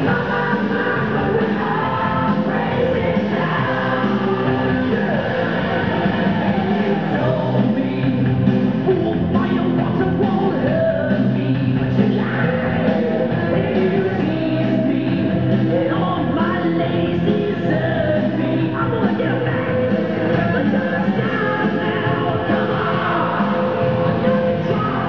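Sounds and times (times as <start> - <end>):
loud rock music with singing: 0.0 - 25.0.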